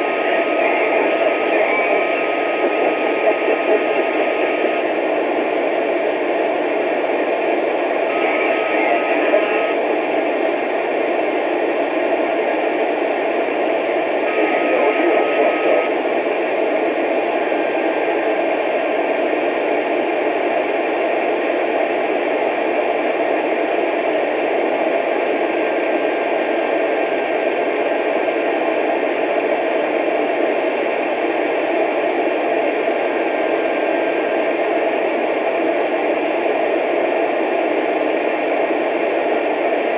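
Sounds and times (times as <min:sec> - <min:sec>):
steady radio whistle: 0:00.0 - 0:11.0, 0:13.4 - 0:16.4
radio static hiss: 0:00.0 - 0:20.2.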